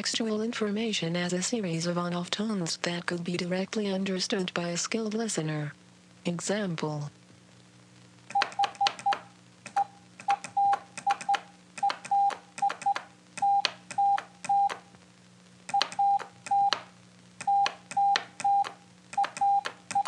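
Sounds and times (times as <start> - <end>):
sharp keying clicks: 8.3 - 14.8, 15.7 - 20.0
morse code beeps: 9.8 - 14.8, 15.7 - 16.8, 17.4 - 20.0.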